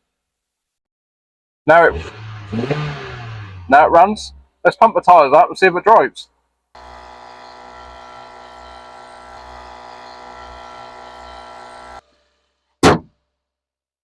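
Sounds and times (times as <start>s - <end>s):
electric tyre inflator buzzing: 1.9s - 3.7s, 6.8s - 12.6s.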